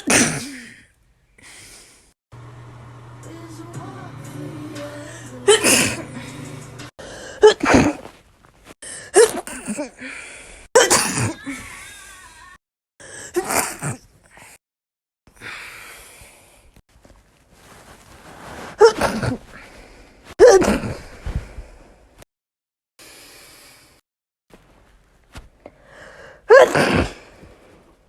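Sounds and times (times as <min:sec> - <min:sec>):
person sneezing: 0:00.0 - 0:00.8, 0:05.5 - 0:06.4, 0:07.3 - 0:08.1, 0:09.1 - 0:09.9, 0:10.8 - 0:11.6, 0:18.8 - 0:19.4, 0:20.4 - 0:21.2, 0:26.5 - 0:27.5.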